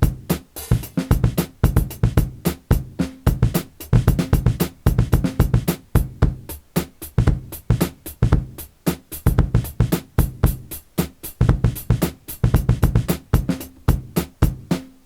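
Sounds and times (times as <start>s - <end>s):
bass notes: 0.0s - 6.6s
electronic drum hits: 0.0s - 8.6s.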